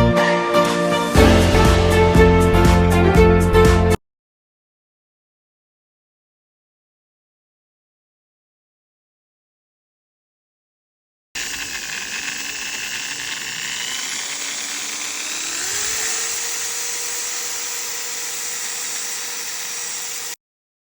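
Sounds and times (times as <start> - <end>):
hammer drill running: 11.4 - 20.4.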